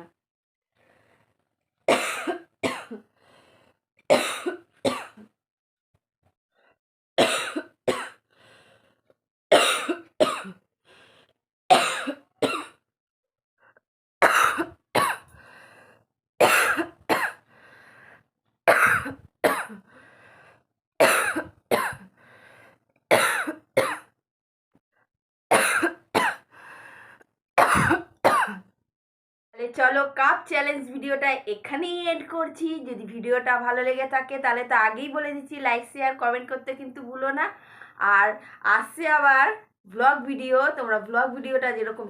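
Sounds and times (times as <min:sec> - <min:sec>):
woman coughing: 0:01.9 - 0:03.0, 0:04.1 - 0:05.3, 0:07.2 - 0:08.2, 0:09.5 - 0:10.6, 0:11.7 - 0:12.8, 0:14.2 - 0:15.3, 0:16.4 - 0:17.4, 0:18.7 - 0:19.8, 0:21.0 - 0:22.1, 0:23.1 - 0:24.1, 0:25.5 - 0:26.5, 0:27.6 - 0:28.7.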